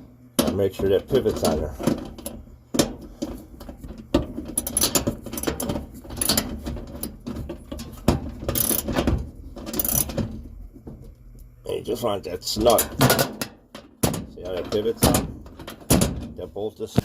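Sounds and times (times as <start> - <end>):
ratchet wrench clicking: 8.6 - 8.9, 9.8 - 10.1.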